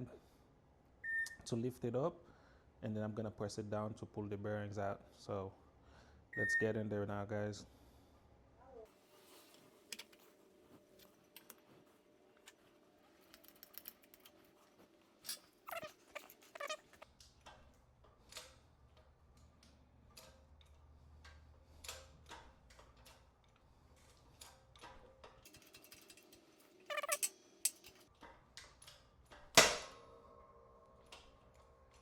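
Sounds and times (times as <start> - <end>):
shop press clicks and knocks: 29.4 - 30.0.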